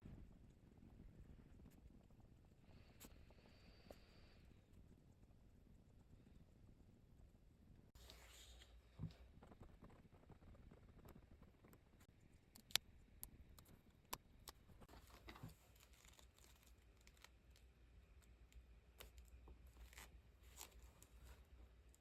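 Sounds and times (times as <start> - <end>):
sharp clicks and taps: 12.5 - 14.7.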